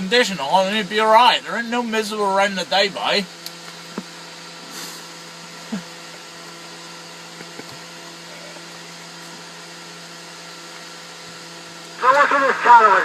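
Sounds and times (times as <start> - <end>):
low electrical hum: 0.0 - 13.0
radio static hiss: 12.0 - 13.0.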